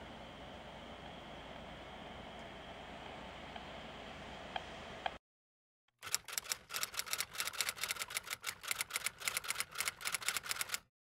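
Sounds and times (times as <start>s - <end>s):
rapid irregular clicks: 6.0s - 10.9s.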